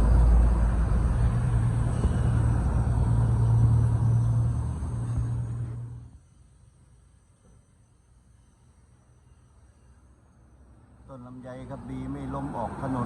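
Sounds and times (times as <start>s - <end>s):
engine rumbling: 0.0s - 7.6s.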